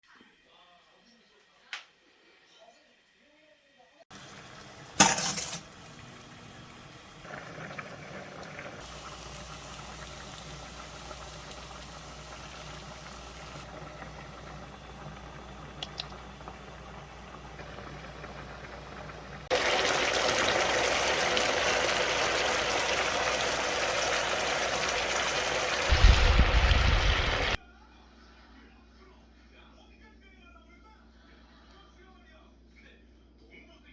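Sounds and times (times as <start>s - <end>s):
quiet kitchen noise: 0.0s - 33.9s
food hissing in a pan: 8.8s - 13.7s, 19.5s - 27.6s
low thumps: 25.9s - 27.5s.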